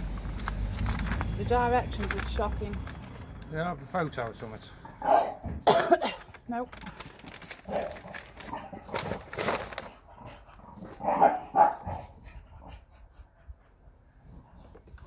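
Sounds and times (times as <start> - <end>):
dog barking: 5.0 - 5.5, 11.0 - 12.2.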